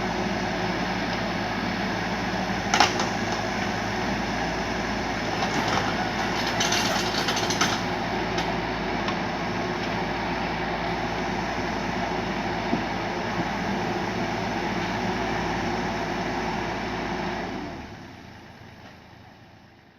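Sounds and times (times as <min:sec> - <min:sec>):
mini excavator running: 0:00.0 - 0:19.9
rattling clatter: 0:05.4 - 0:07.9.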